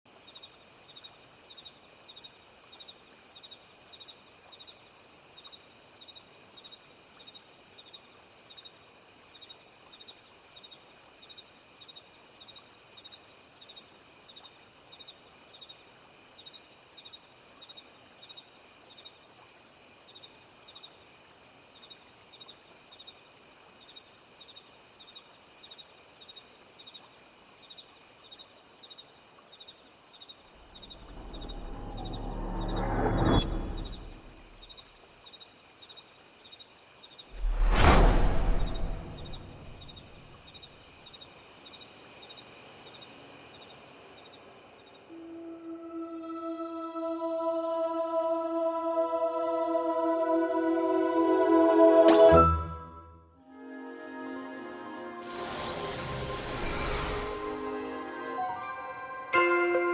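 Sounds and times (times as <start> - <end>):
insects chirping: 0.1 - 46.8, 54.0 - 59.1
faint high drone: 30.6 - 34.7.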